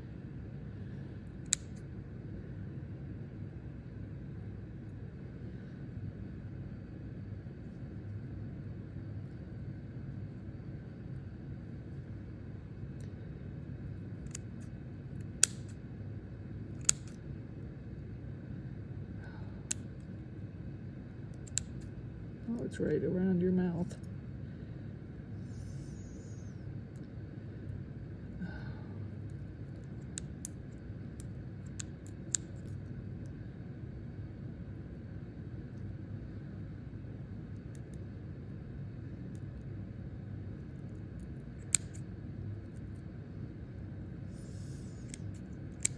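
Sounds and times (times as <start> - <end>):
low room hum: 0.0 - 45.9
blade snipping plastic netting: 15.2 - 15.7
cutting tool snipping netting: 15.4 - 15.7, 16.8 - 17.2.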